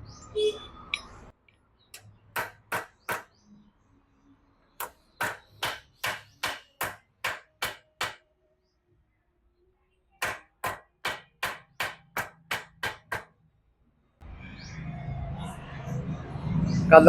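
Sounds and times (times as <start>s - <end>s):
hammer tapping metal: 2.0s - 3.3s, 4.8s - 8.2s, 10.2s - 13.3s.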